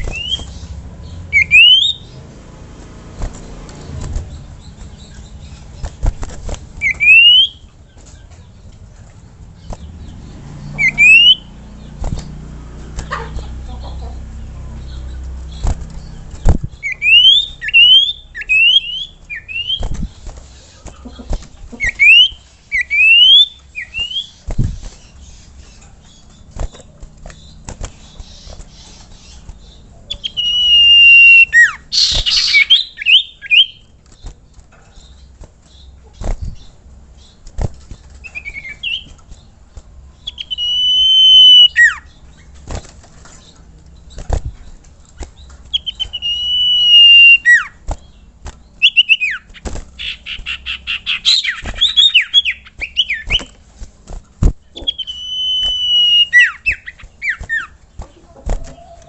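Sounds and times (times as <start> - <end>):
bird whistled calls: 0.0 - 0.5, 1.3 - 2.1, 6.8 - 7.7, 10.7 - 11.5, 16.8 - 20.0, 21.8 - 24.4, 30.1 - 33.8, 40.3 - 42.1, 45.7 - 47.8, 48.8 - 53.6, 54.8 - 57.8.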